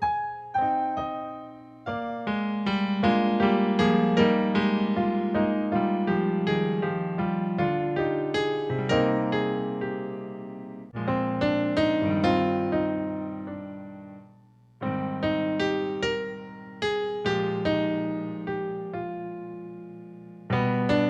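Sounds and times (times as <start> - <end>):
solo piano: 0.0 - 21.0.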